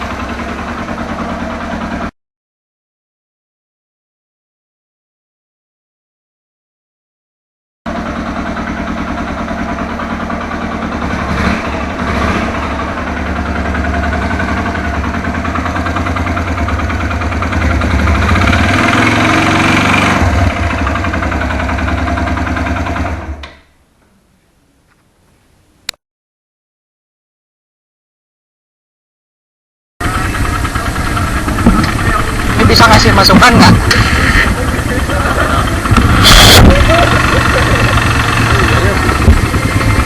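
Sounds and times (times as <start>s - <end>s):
motorcycle engine revving: 0.0s - 2.1s, 7.9s - 23.4s, 30.0s - 40.0s.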